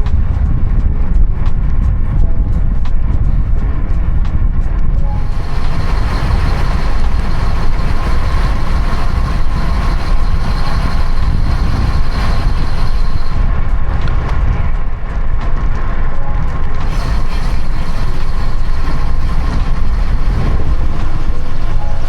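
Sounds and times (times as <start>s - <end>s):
wind rushing over microphone: 0.0s - 22.0s
faint high hum: 5.0s - 13.7s, 16.2s - 22.0s.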